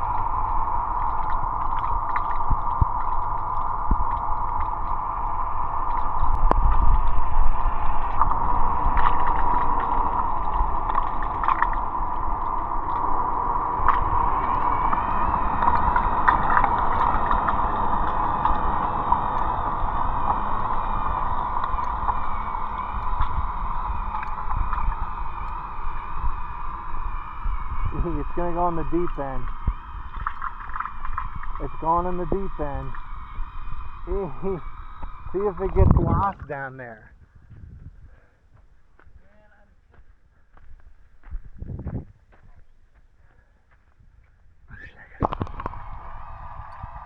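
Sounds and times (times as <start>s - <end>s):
robot pool vacuum motor hum: 0.0s - 36.3s, 45.2s - 47.0s
water gurgling and sloshing: 0.0s - 36.8s.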